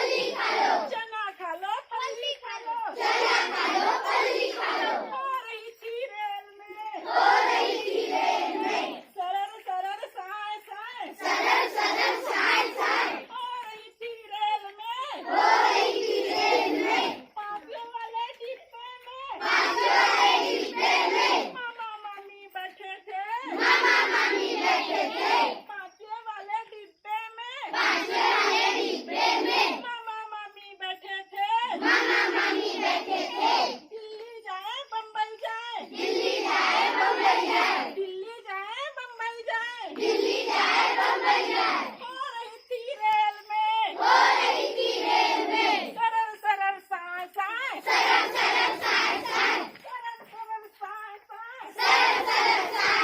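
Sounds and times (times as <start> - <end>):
children singing in unison: 0.0 - 0.9, 2.9 - 5.1, 7.0 - 9.1, 11.2 - 13.3, 15.1 - 17.2, 19.4 - 21.6, 23.5 - 25.6, 27.7 - 29.8, 31.8 - 33.8, 35.8 - 38.0, 39.9 - 42.0, 43.9 - 45.9, 47.8 - 49.8, 51.7 - 53.0.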